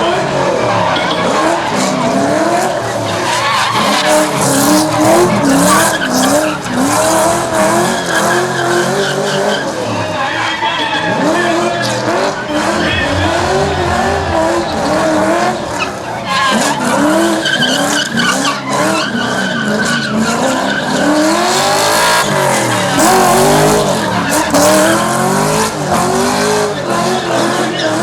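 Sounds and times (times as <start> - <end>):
tyres squealing and skidding: 0.0 - 28.0
car engine revving: 11.0 - 27.6.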